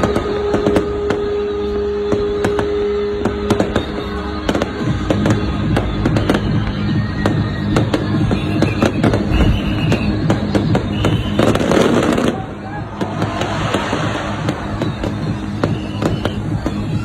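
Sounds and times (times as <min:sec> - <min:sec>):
fireworks bangs and crackles: 0:00.0 - 0:17.0
music playing: 0:00.0 - 0:17.0.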